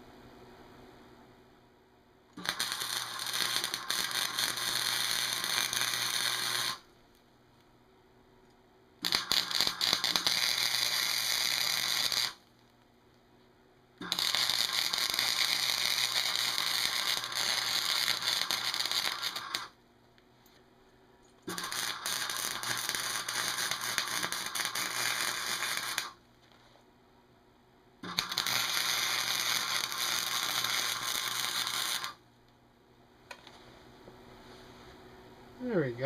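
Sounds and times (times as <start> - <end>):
arc welder crackling sizzle: 2.3 - 7.7, 9.0 - 13.2, 14.0 - 20.6, 21.4 - 26.9, 28.0 - 32.6.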